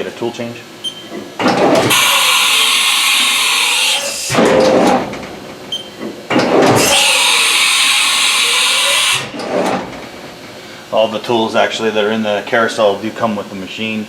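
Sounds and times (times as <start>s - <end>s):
tool changer clunks and sliding: 0.8s - 2.0s, 4.3s - 6.8s, 9.3s - 10.6s
compressed air hissing: 1.9s - 4.4s, 6.8s - 9.4s.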